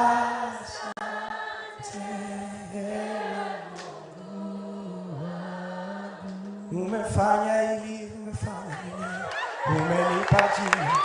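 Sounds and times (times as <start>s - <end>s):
choir singing long notes: 0.0s - 7.8s.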